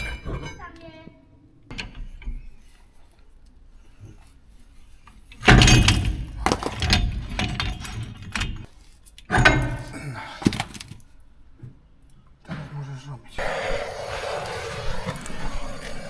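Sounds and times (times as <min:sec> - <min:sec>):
tools and parts clattering: 0:05.4 - 0:11.0.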